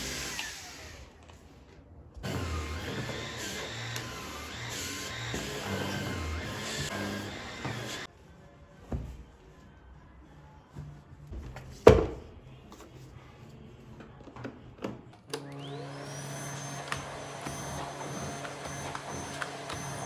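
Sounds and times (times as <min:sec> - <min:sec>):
vacuum cleaner motor whine: 0:00.0 - 0:01.1, 0:02.2 - 0:08.1, 0:15.3 - 0:20.0.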